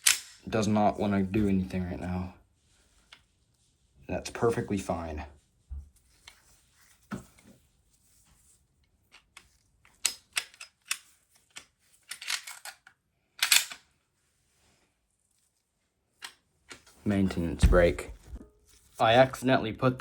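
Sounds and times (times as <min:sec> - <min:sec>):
pistol slide clicking: 0:13.4 - 0:13.8.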